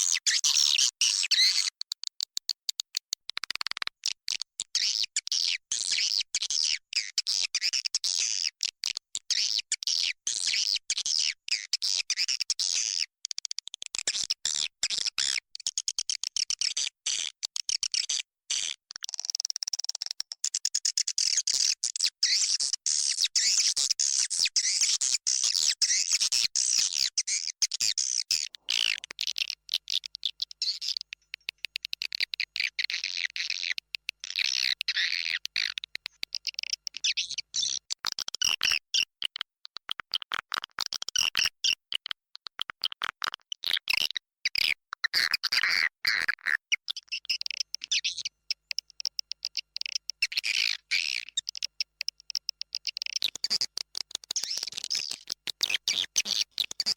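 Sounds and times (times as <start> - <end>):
swiftlets twittering and chirping: 0.0 - 1.8, 46.9 - 56.9.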